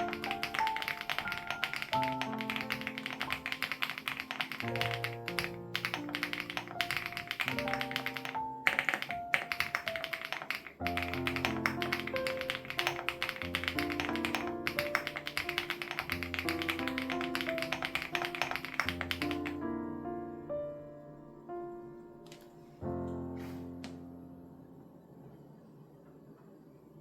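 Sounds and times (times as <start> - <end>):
mechanical keyboard typing: 0.0 - 19.6
soft background music: 0.0 - 25.3.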